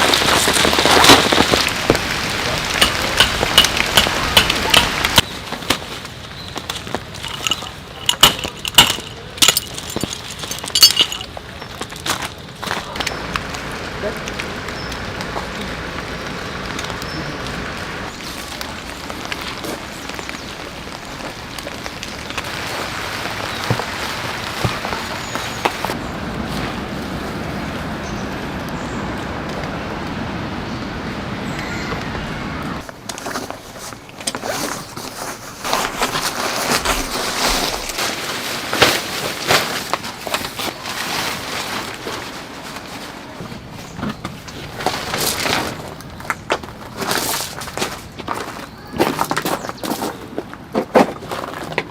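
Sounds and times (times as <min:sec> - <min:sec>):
heavy rain: 0:00.0 - 0:08.0, 0:10.7 - 0:32.9
knocks clicks and rustles: 0:00.0 - 0:26.0, 0:32.8 - 0:51.9.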